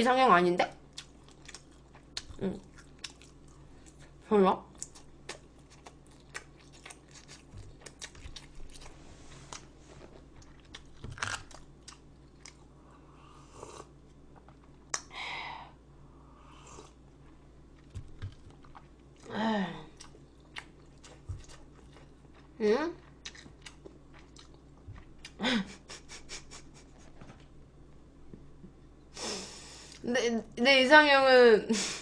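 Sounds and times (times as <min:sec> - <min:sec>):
chewing and crunching food: 0:00.8 - 0:13.0, 0:16.8 - 0:19.3, 0:19.9 - 0:25.4.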